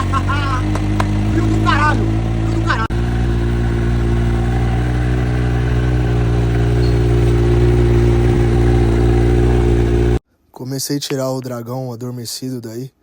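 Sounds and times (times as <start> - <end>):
motorcycle engine idling: 0.0 - 10.2.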